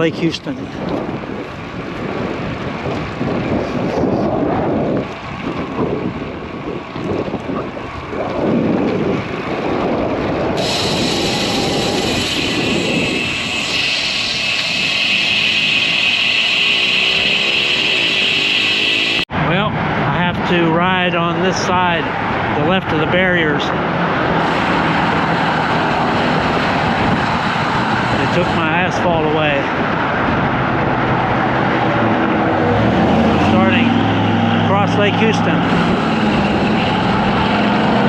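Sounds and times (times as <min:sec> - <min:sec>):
wind and road noise: 0:00.0 - 0:38.0
loud steady high hiss: 0:10.6 - 0:19.2.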